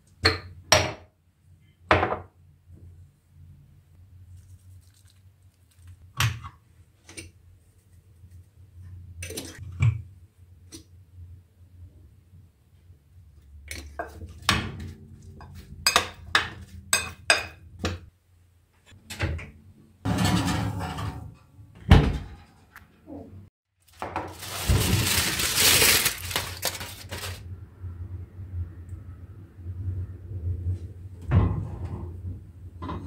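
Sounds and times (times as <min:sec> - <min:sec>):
rushing noises: 0:24.3 - 0:27.4.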